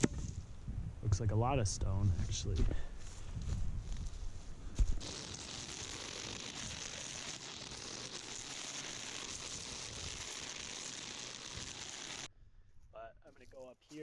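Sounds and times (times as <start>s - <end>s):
string trimmer cutting brush: 5.0s - 12.3s.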